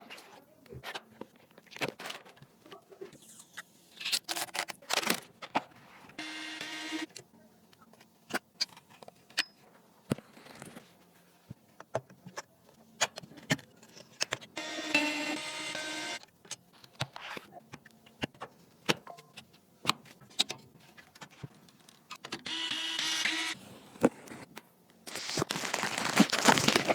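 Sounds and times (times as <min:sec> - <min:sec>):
rustling scrapes: 0:25.1 - 0:26.9.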